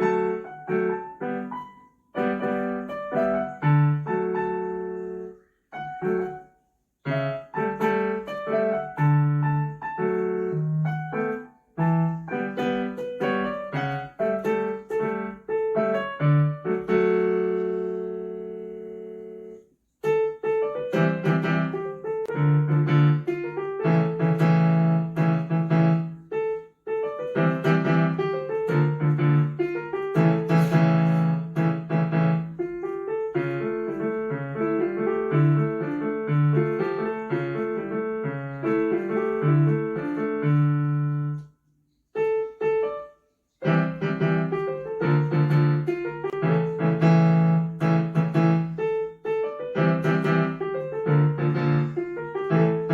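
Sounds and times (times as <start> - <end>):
solo piano piece: 0.0 - 52.9.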